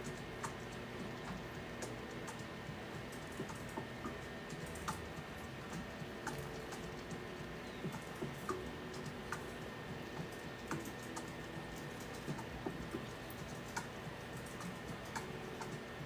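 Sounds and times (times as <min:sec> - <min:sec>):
faint steady hum: 0:00.0 - 0:16.0
light clicks and taps: 0:05.7 - 0:15.8.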